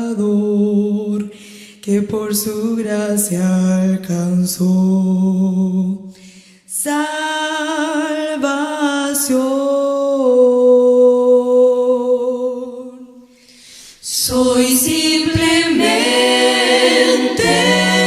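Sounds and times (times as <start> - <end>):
women's quartet singing a hymn: 14.0 - 18.0.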